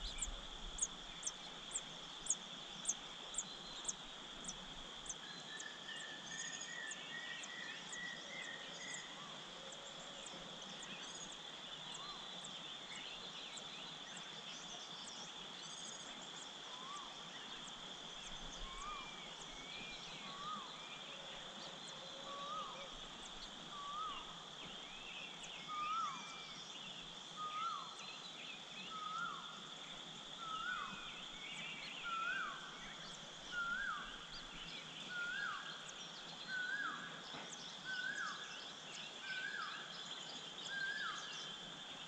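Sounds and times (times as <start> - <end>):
bird chirps: 0.0 - 9.2
insect drone: 0.0 - 42.0.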